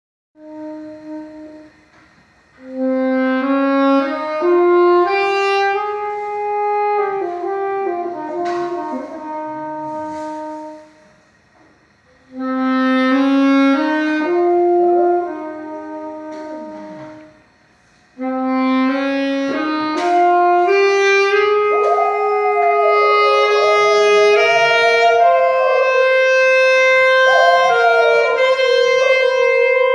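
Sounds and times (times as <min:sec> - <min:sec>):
saxophone slow melody: 0:00.4 - 0:29.9.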